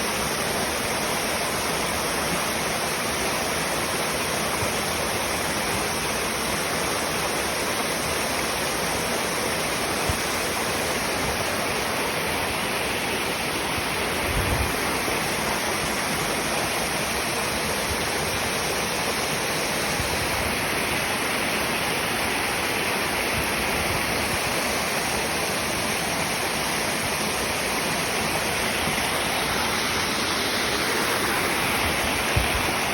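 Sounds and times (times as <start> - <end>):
waterfall roaring: 0.0 - 32.9
wind thuds on microphone: 14.2 - 15.0, 31.8 - 32.8.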